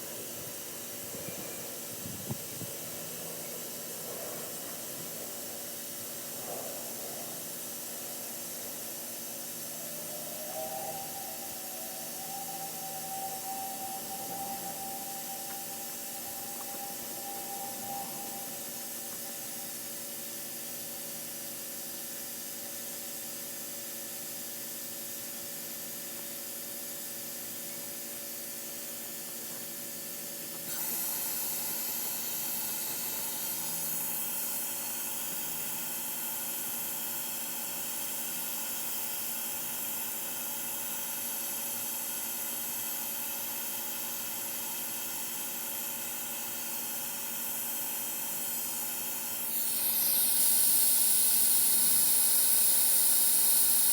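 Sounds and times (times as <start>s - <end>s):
electric blower running: 30.7s - 35.6s, 49.3s - 53.9s.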